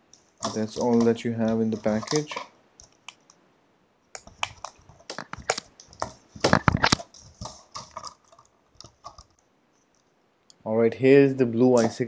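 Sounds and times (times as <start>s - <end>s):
plastic packaging crinkling: 0.4s - 3.2s, 4.2s - 9.4s.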